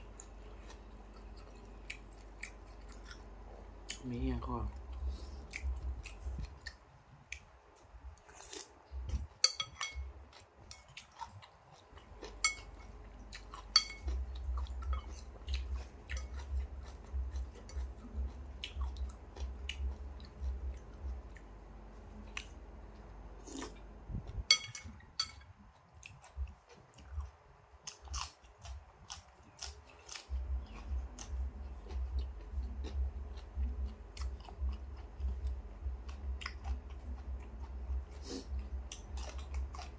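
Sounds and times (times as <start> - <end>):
close-up chewing: 0.0 - 39.9
utensils clinking against bowl: 9.4 - 10.1, 12.4 - 12.9, 13.7 - 14.1, 24.5 - 25.4.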